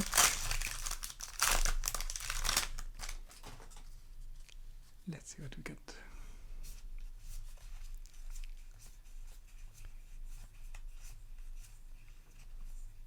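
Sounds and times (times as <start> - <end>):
trading cards rustling and clicking: 0.0 - 3.8
low room hum: 0.0 - 13.0.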